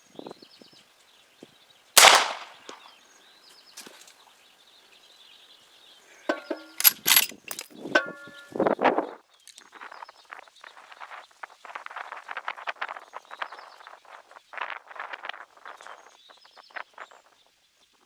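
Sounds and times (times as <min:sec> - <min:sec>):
rifle shot with echo: 0:02.0 - 0:02.9
metallic clacks and clinks: 0:06.3 - 0:08.5.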